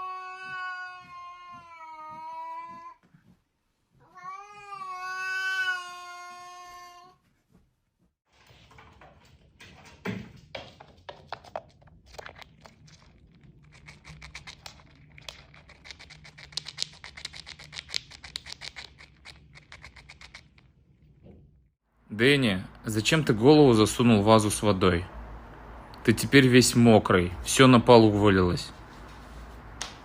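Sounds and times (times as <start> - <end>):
rapid scratching and tapping: 10.4 - 20.8.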